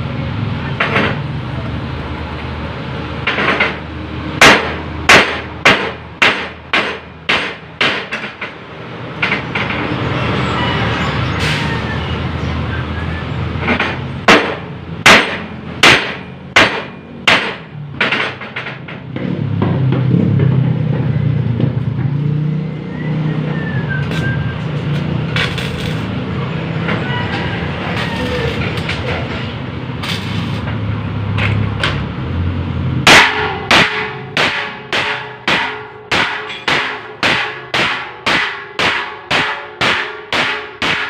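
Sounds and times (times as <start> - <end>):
engine running: 0.0 - 38.3
sharp hammer strikes: 4.4 - 8.6, 13.6 - 20.7, 33.0 - 41.0.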